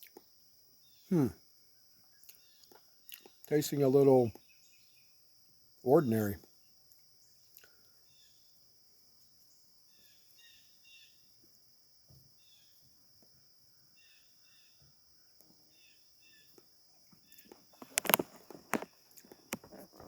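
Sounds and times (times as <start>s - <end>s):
high insect drone: 0.0s - 20.0s
short bird chirps: 9.9s - 11.3s.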